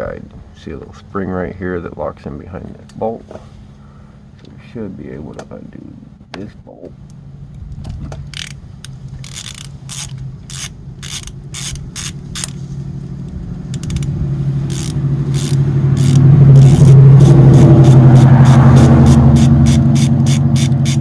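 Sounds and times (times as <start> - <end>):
steady low hum: 0.0 - 21.0
ratchet wrench clicking: 8.3 - 12.6, 13.7 - 21.0.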